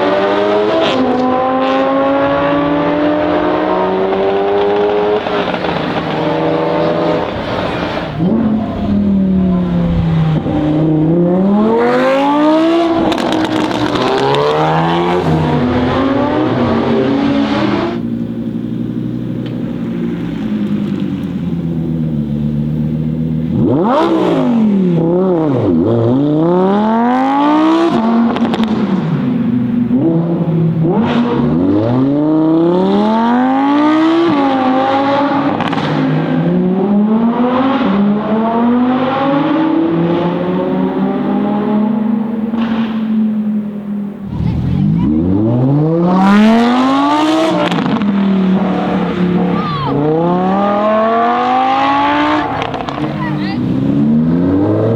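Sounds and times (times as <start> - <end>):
sports car engine revving: 0.0 - 54.9.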